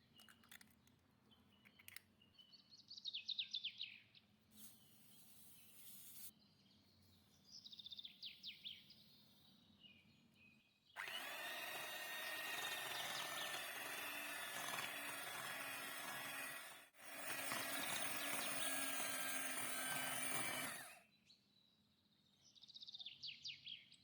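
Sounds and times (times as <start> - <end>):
electric mixer whining: 11.0 - 21.0.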